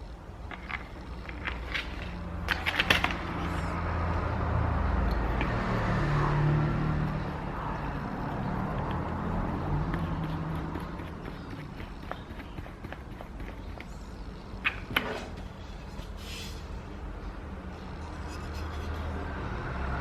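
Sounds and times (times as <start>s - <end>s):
vehicle engine rumble passing: 3.0s - 11.3s, 16.6s - 20.0s.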